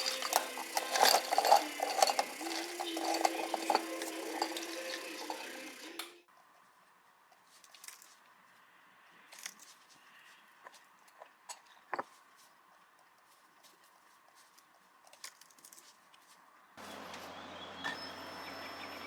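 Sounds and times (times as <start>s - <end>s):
steady tones: 0.0s - 6.1s.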